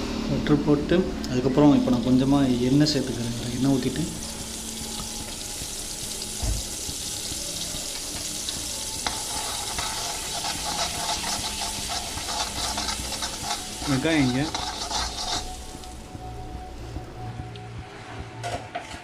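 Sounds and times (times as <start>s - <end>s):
butter sizzling in a hot pan: 2.2s - 16.1s.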